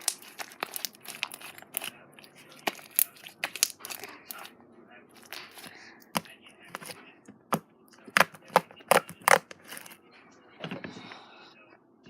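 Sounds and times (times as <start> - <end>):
slime popping and clicking: 2.6 - 4.4.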